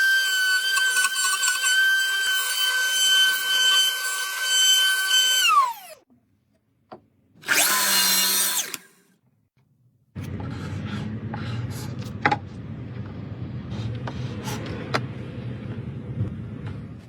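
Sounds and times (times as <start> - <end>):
power tool motor whining: 0.0 - 6.0, 7.4 - 9.0.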